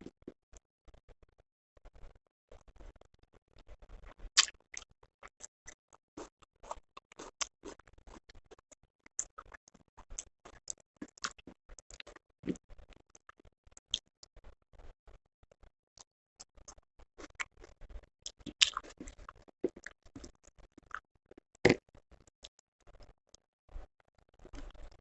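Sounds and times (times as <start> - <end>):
person chewing: 6.2 - 9.5, 10.2 - 12.6, 18.3 - 21.0.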